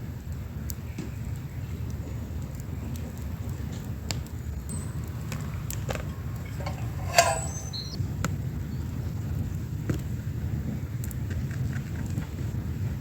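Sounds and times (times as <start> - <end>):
cooking utensils clicking: 4.7 - 8.0
sharp ringing clink: 4.7 - 8.0.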